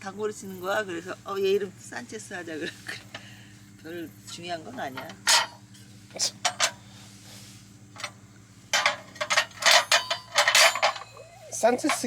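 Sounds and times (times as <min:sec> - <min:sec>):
steady low hum: 0:00.0 - 0:12.0
cookware clinking and knocking: 0:08.8 - 0:12.0.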